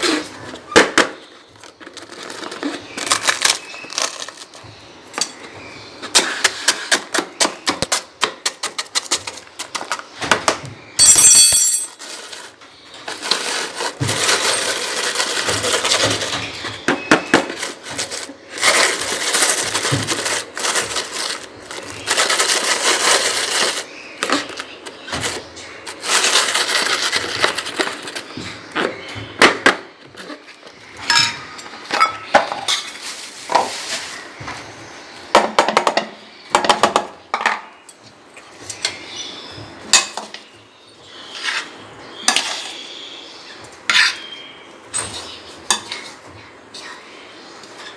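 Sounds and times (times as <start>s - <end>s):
dish and utensils clattering: 11.0s - 12.5s, 31.0s - 33.7s
utensil scraping: 11.8s - 28.4s.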